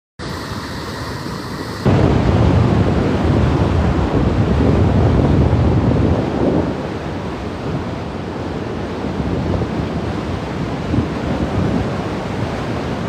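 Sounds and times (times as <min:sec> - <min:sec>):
floodwater rushing: 0:00.2 - 0:13.0
wind buffeting microphone: 0:01.8 - 0:13.0.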